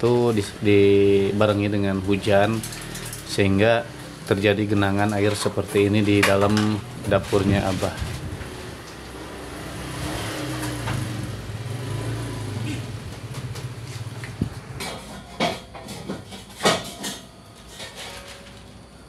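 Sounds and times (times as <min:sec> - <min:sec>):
objects knocking and clattering: 0:05.1 - 0:06.8, 0:13.0 - 0:18.7.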